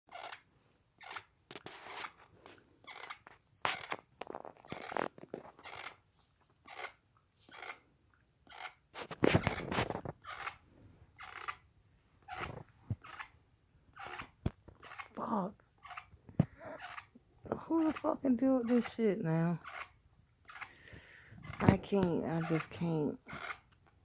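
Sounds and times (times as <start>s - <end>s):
teeth grinding: 0.1s - 2.2s, 2.8s - 6.0s, 6.6s - 7.8s, 8.5s - 8.8s, 11.2s - 11.6s, 19.6s - 21.6s, 22.4s - 23.9s.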